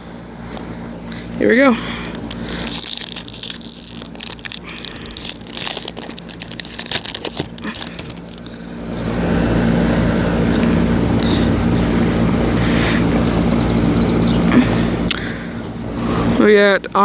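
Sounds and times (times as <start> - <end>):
low engine hum: 0.0 - 17.0
foil wrapper tearing and crinkling: 1.9 - 8.6.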